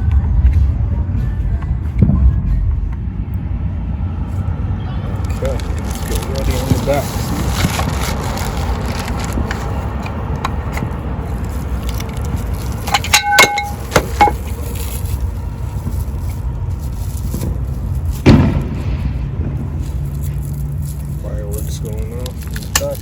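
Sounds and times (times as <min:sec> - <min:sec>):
low rumble: 0:00.0 - 0:22.8
ringing metallic clinks: 0:13.0 - 0:14.4
distant fireworks: 0:18.2 - 0:20.0
loud bang: 0:18.2 - 0:20.1.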